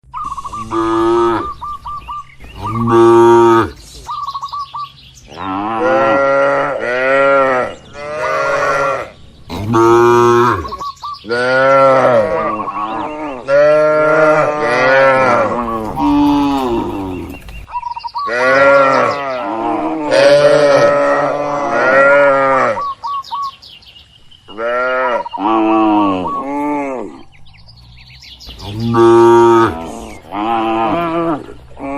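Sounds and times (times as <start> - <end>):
high chirps: 0.0 - 5.4
cattle mooing: 0.5 - 1.6, 2.6 - 3.8, 5.3 - 17.4, 18.3 - 22.9, 28.6 - 31.9.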